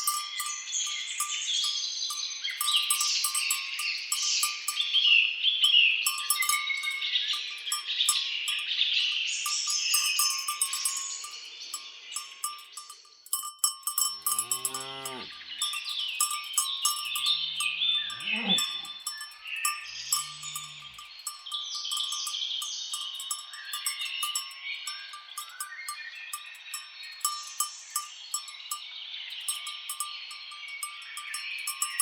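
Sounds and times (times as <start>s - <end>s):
small clinks: 0.0s - 32.0s
cattle mooing: 14.3s - 15.4s, 17.1s - 19.0s, 19.9s - 21.1s
birds chirping: 14.3s - 22.2s.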